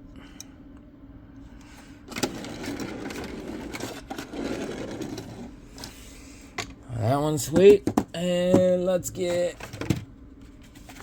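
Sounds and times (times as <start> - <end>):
toy car scraping and rattling: 2.1 - 5.5.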